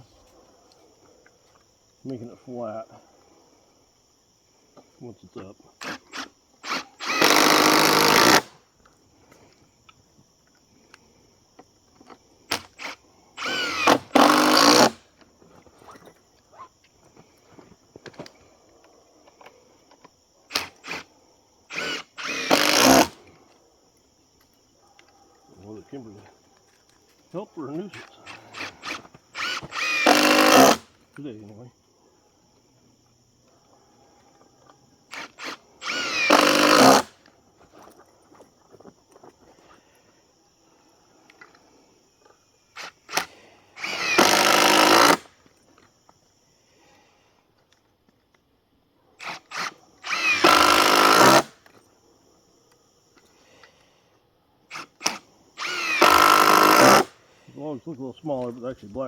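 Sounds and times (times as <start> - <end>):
power drill driving screws: 5.8 - 8.6, 12.5 - 15.0, 20.5 - 21.1, 21.7 - 23.2, 27.9 - 30.9, 35.1 - 37.2, 42.8 - 45.3, 49.2 - 51.8, 54.7 - 57.2.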